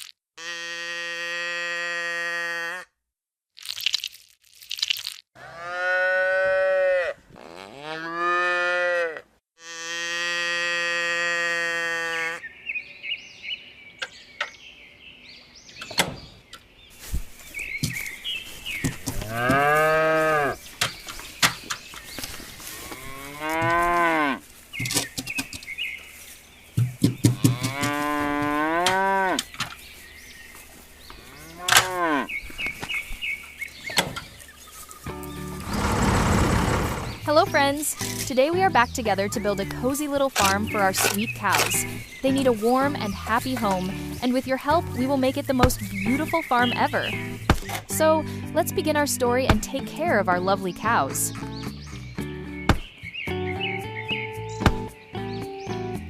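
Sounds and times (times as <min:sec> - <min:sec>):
cows mooing: 0:00.4 - 0:02.8, 0:05.4 - 0:12.4, 0:19.2 - 0:20.6, 0:22.7 - 0:24.4, 0:27.3 - 0:29.5, 0:31.2 - 0:32.3, 0:35.5 - 0:37.3.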